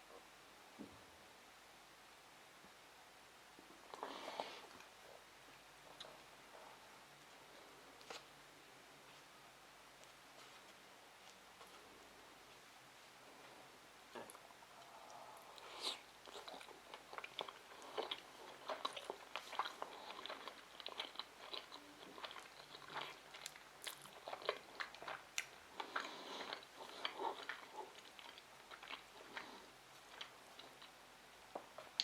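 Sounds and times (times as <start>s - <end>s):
person chewing: 14.2s - 31.0s.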